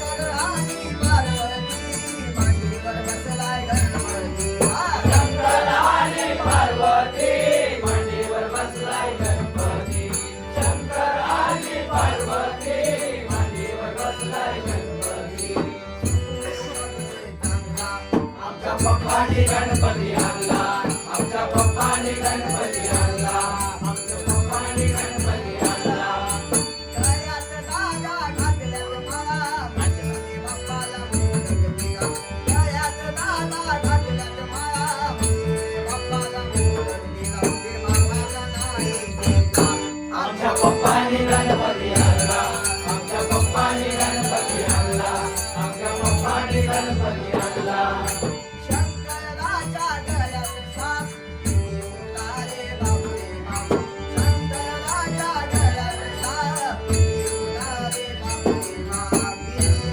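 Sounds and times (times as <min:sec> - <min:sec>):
voices singing devotional song: 0:00.0 - 0:59.9
held accompanying tones: 0:33.0 - 0:59.9.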